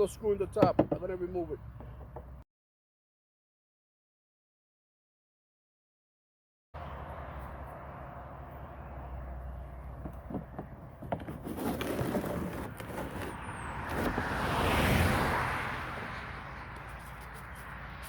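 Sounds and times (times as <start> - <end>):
car passing by: 13.3 - 18.0.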